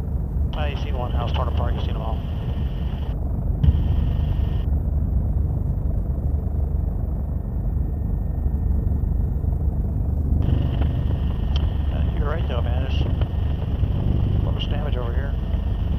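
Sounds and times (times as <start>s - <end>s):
helicopter cabin drone: 0.0s - 15.9s.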